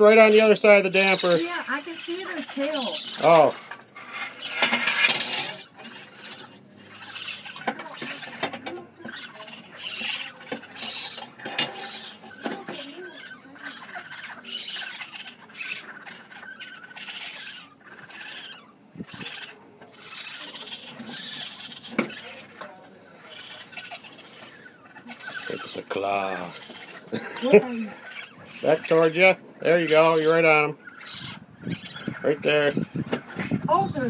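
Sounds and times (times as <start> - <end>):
baby raccoons chittering and squealing: 0.0 - 34.0
scraping and tapping: 1.1 - 16.5, 19.2 - 27.6.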